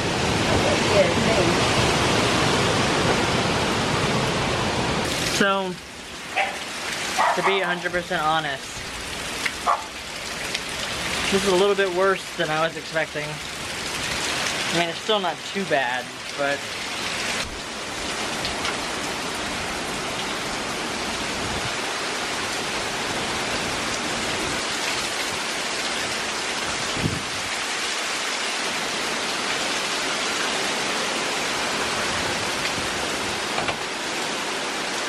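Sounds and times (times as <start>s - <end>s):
heavy rain pouring: 0.0s - 35.0s.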